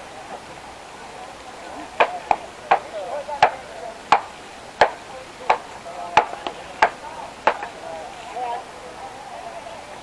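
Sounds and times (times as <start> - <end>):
sharp knocks: 2.0 - 7.8.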